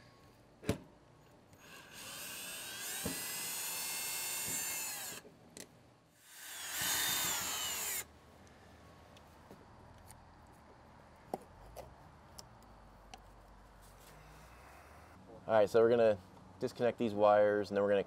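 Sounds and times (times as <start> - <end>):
cordless drill whining: 1.6 - 5.2, 6.2 - 8.0.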